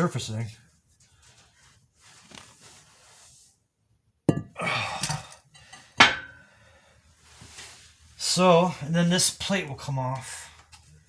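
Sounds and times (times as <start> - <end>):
metal parts clanking on workbench: 5.1 - 6.4.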